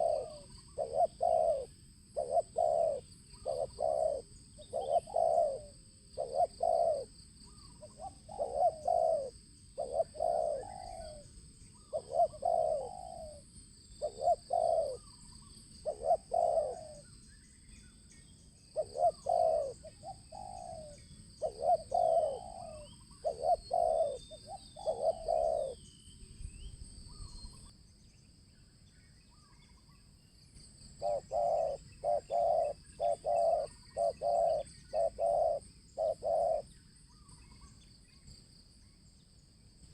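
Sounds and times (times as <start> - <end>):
dove cooing: 0.0 - 17.1, 18.7 - 25.9, 31.0 - 37.7.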